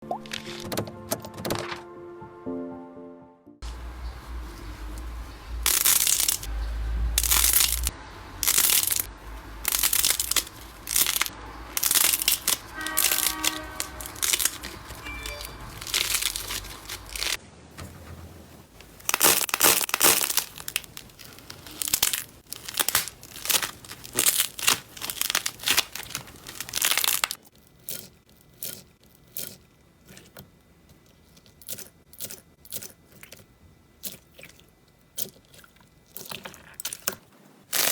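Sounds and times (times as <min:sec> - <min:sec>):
slime squeezed by hand: 0:09.7 - 0:17.4.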